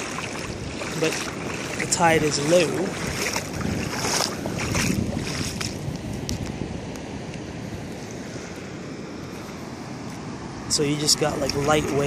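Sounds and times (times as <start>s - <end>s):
wind on the microphone: 0.0s - 8.6s
waves washing over a beach: 0.0s - 12.0s.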